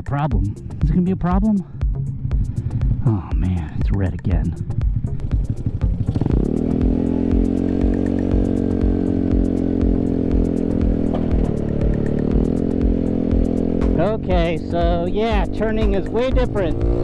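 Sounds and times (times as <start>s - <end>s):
scooter engine running: 4.6s - 17.0s.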